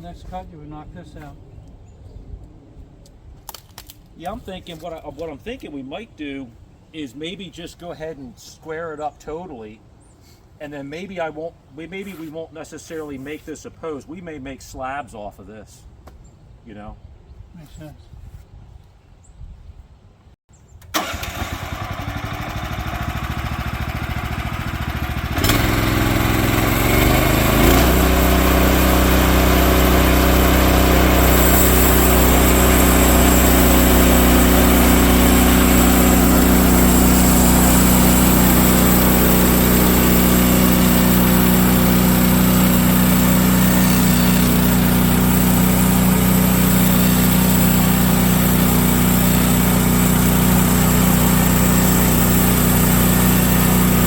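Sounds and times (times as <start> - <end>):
gas engine running: 21.0 - 54.0
saw blade hiss: 25.5 - 54.0.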